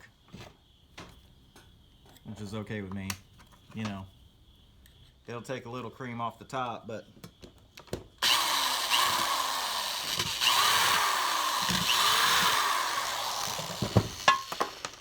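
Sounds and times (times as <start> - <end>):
power tool running: 8.2 - 15.0.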